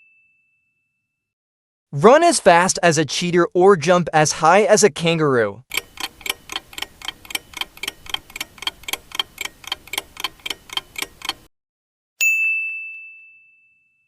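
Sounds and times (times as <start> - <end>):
bell ding: 0.0 - 1.2, 12.2 - 14.0
clock ticking: 5.7 - 11.5.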